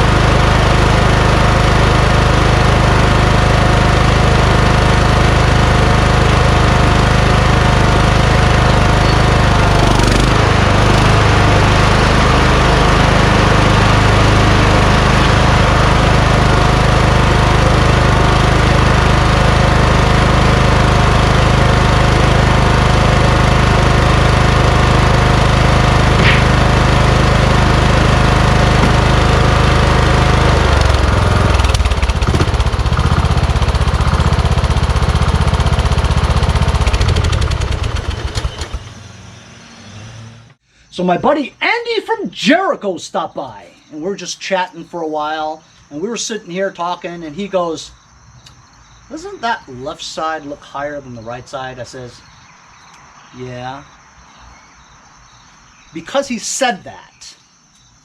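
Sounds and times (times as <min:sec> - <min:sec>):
lawn tractor engine running: 0:00.0 - 0:39.5.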